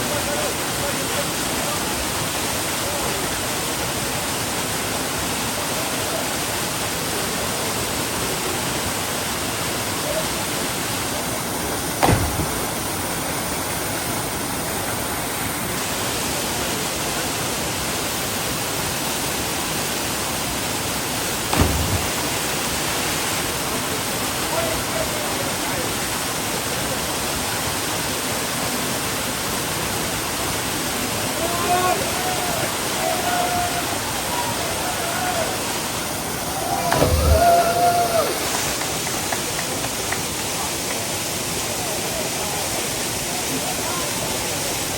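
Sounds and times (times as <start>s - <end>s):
waterfall rushing: 0.5s - 44.9s
brief thumps: 12.0s - 12.9s, 21.5s - 22.8s, 36.8s - 37.7s.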